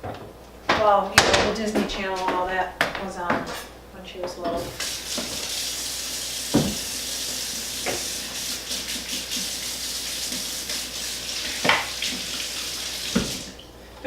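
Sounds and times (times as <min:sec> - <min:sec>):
kitchen tap running: 0:04.6 - 0:14.0.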